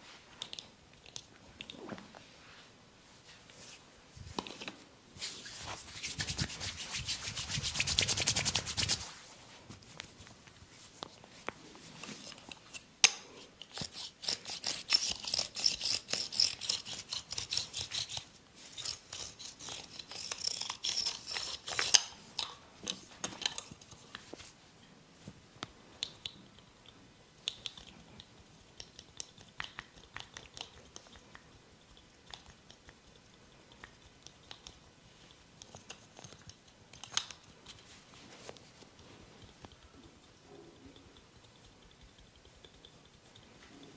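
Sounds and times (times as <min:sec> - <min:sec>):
fingers scratching hair and skin: 0:05.2 - 0:09.2, 0:13.6 - 0:22.1.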